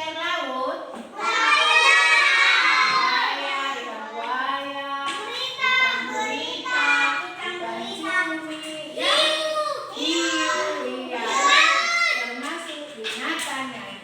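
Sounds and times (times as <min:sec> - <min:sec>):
children singing: 0:01.2 - 0:04.4, 0:05.3 - 0:12.2.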